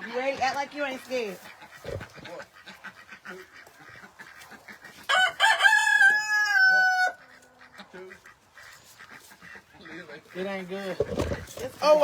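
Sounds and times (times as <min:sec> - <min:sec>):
rooster crowing: 0:05.1 - 0:07.2.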